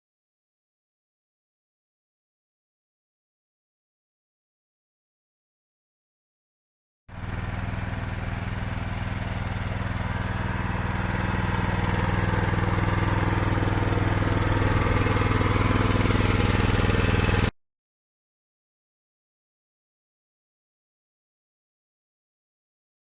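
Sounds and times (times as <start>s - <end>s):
skid steer loader engine running: 7.2s - 17.5s.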